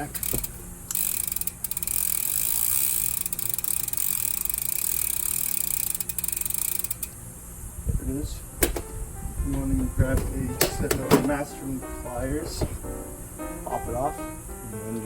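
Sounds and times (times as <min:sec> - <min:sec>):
bicycle freehub ratcheting clicks: 0:00.0 - 0:07.2.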